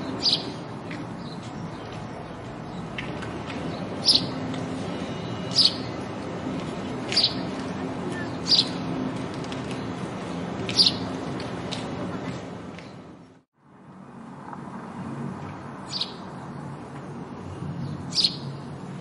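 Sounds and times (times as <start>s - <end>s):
sparrow chirping: 0.0s - 8.9s, 10.7s - 11.2s, 15.8s - 16.2s, 17.7s - 18.7s.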